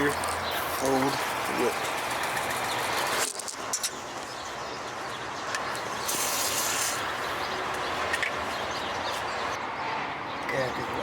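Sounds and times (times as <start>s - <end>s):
aerosol spray hiss: 6.0s - 7.0s.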